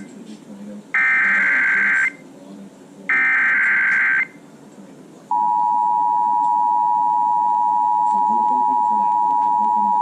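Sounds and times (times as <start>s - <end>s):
radio static: 1.0s - 2.2s
steady alarm tone: 1.0s - 2.2s, 3.1s - 4.4s.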